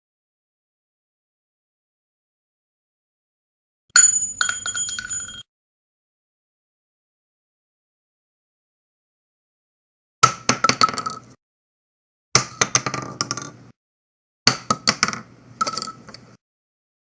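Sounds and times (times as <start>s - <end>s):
shell casings bouncing on hard surface: 4.0s - 5.4s.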